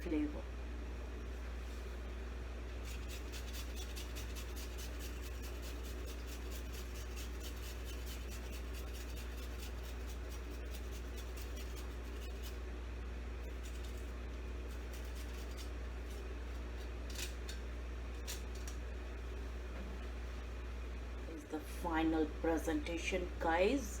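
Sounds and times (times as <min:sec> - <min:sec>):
steady low hum: 0:00.0 - 0:24.0
ginger scratching on a grater: 0:02.8 - 0:12.6, 0:13.4 - 0:16.3.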